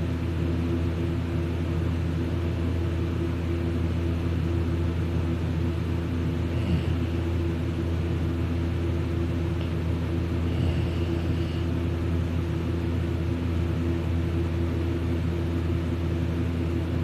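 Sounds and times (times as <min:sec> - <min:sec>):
steady low hum: 0:00.0 - 0:17.0
man snoring: 0:06.4 - 0:07.4, 0:10.4 - 0:11.7.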